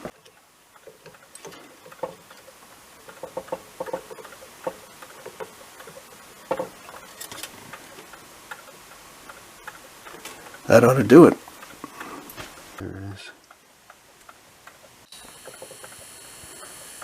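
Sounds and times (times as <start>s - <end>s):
small tools tapping circuit board: 0.1s - 10.6s, 14.2s - 17.0s.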